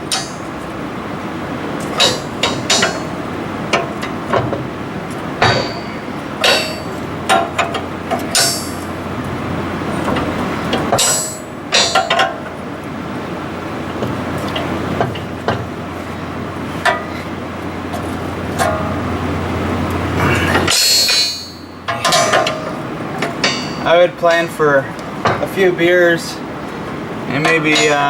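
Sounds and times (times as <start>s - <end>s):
wrench clanking on threaded rod: 1.9s - 4.6s, 5.4s - 9.0s, 10.0s - 12.6s, 20.3s - 24.0s, 27.3s - 28.0s.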